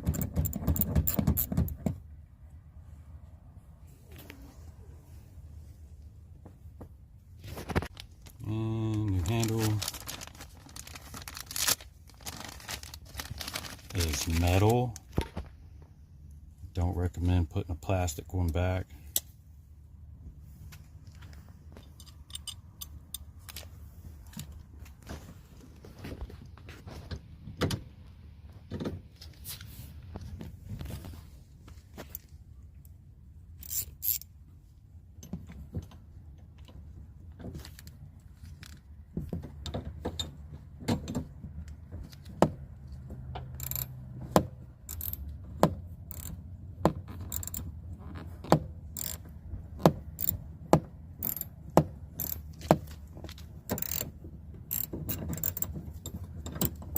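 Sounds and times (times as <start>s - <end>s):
metal parts clicking and clinking: 21.7s - 24.6s, 33.6s - 34.3s, 43.5s - 43.9s, 44.9s - 45.4s, 46.1s - 46.4s, 47.2s - 47.7s, 49.0s - 49.2s, 50.2s - 50.4s, 51.2s - 51.5s, 52.2s - 54.1s, 54.7s - 56.9s.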